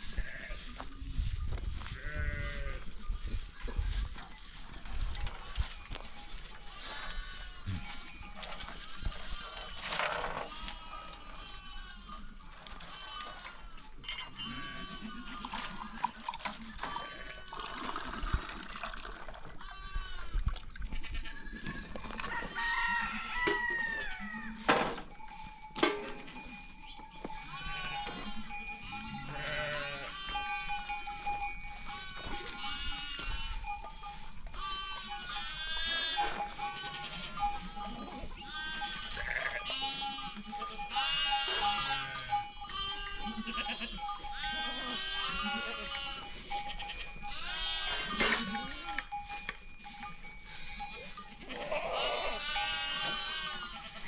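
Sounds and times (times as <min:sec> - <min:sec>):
goats and sheep bleating: 0:00.0 - 0:18.4, 0:19.4 - 0:54.0
steady ringing tone: 0:21.4 - 0:51.8.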